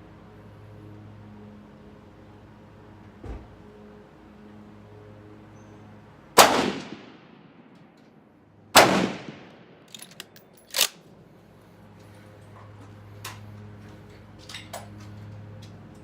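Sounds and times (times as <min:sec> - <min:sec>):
rifle shots: 0:06.4 - 0:07.7, 0:08.7 - 0:11.0.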